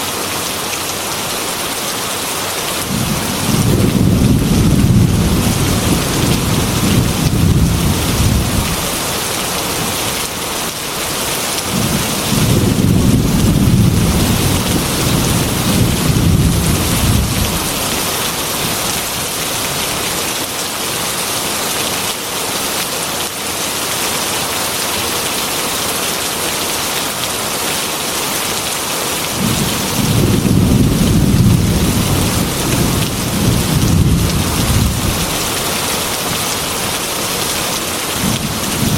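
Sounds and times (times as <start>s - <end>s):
heavy rain on window glass: 0.1s - 38.9s
thunder rolling: 2.9s - 8.8s, 11.7s - 18.0s, 29.4s - 35.4s.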